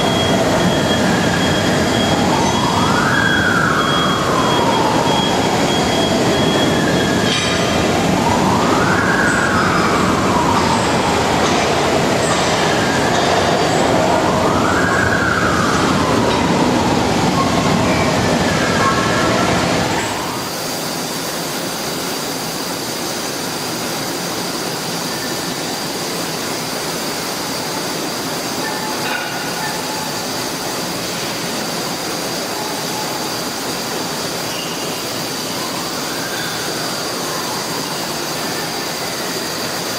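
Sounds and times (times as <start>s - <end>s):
plasma cutter hissing and whining: 19.2s - 39.9s.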